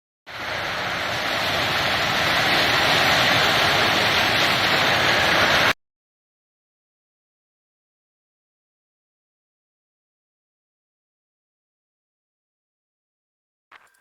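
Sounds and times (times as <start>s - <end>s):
rushing hiss: 0.3s - 5.8s.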